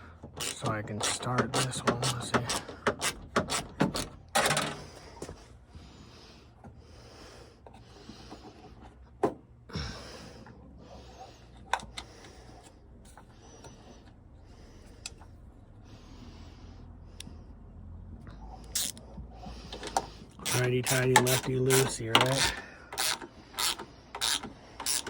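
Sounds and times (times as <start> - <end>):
socket ratchet clicking: 0.4 - 4.2, 18.7 - 19.0, 19.8 - 25.0.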